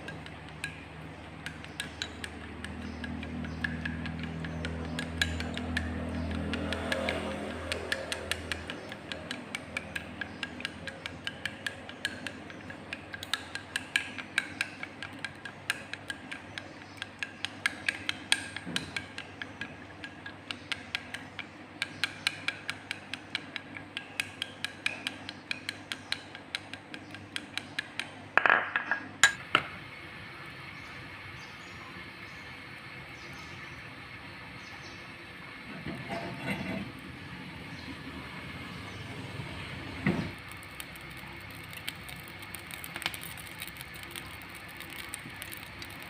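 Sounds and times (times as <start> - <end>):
utensil clicking against bowl: 0.0 - 28.2, 40.3 - 46.0
utensil scraping bowl: 35.9 - 37.0.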